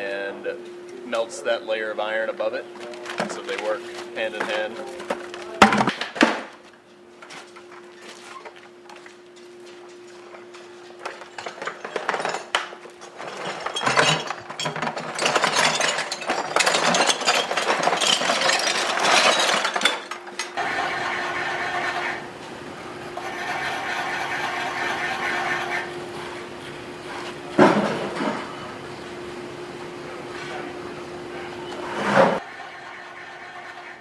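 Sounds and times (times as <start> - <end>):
steady machine hum: 0.0 - 34.0
lumps of coke and iron clattering: 2.8 - 6.6, 9.8 - 20.8, 27.6 - 28.6
machine whine: 7.2 - 34.0.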